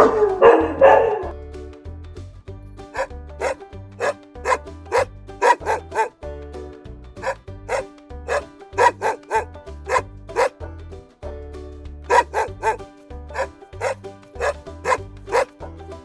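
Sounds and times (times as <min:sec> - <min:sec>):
dog barking: 0:00.0 - 0:01.3, 0:03.0 - 0:06.1, 0:07.2 - 0:10.5, 0:12.1 - 0:12.8, 0:13.4 - 0:15.5.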